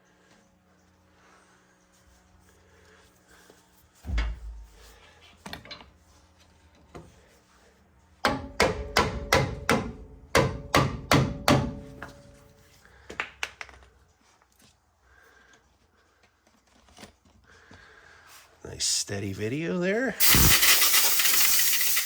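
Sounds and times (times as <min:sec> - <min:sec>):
heavy thump: 0:04.0 - 0:04.9.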